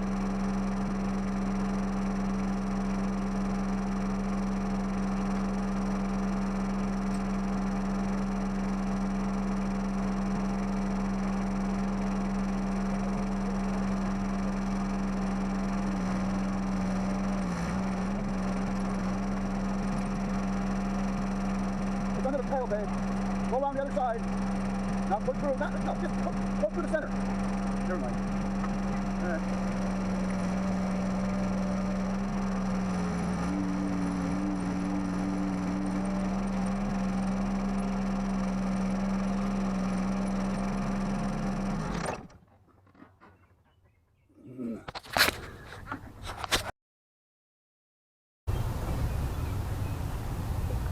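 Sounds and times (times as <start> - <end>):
lawn tractor engine running: 0.0 - 42.5, 48.5 - 50.9.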